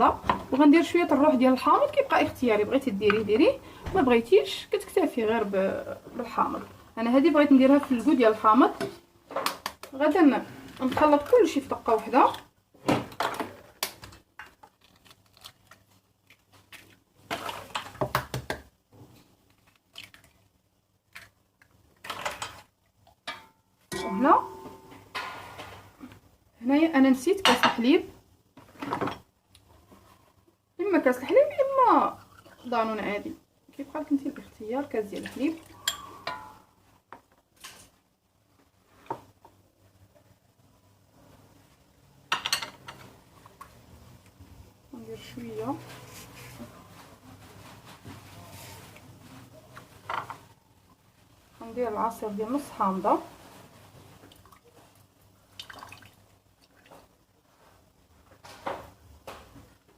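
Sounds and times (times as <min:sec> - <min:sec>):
kitchen clatter: 0:12.2 - 0:14.8, 0:22.0 - 0:26.0, 0:35.0 - 0:36.7, 0:42.3 - 0:43.2
kitchen utensils clicking and clattering: 0:22.0 - 0:22.7, 0:35.2 - 0:36.6.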